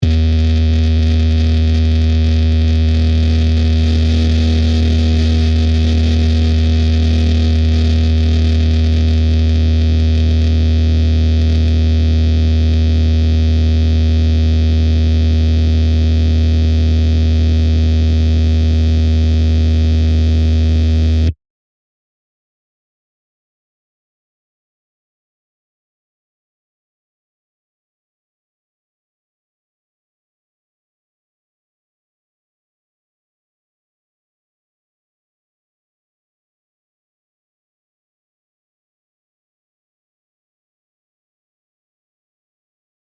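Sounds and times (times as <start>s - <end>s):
crackles: 0.0s - 11.8s
distorted low drone hum: 0.0s - 21.3s.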